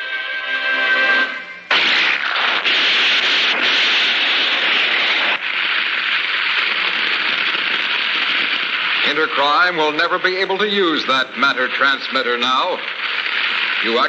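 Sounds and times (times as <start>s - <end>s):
cartoon explosion: 1.7s - 10.2s.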